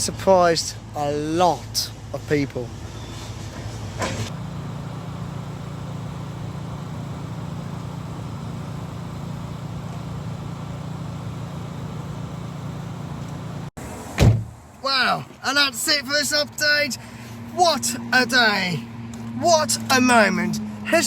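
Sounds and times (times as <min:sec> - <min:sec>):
engine idling: 0:04.2 - 0:13.7.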